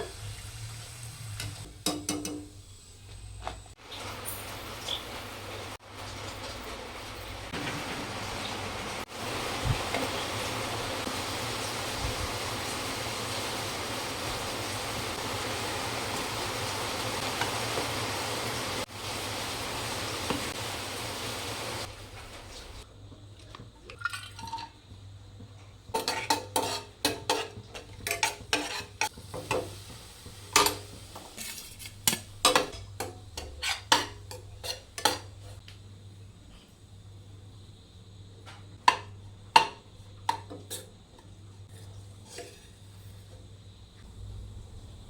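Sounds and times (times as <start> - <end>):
utensils clinking against a dish: 25.9 - 29.7.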